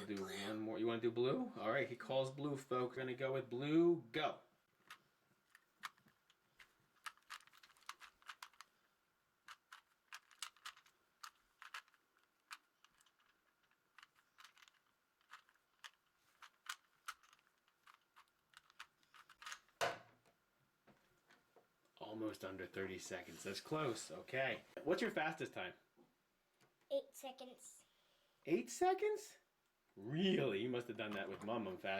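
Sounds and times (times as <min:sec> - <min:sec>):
puzzle cube plastic layers clicking: 0:04.8 - 0:08.8, 0:09.4 - 0:19.8.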